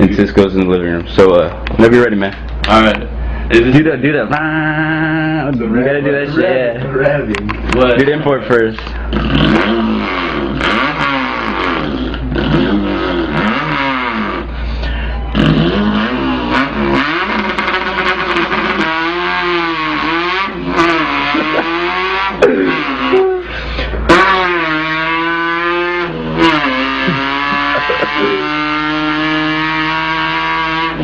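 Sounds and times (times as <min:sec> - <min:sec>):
man imitating car engine: 0:02.6 - 0:31.0.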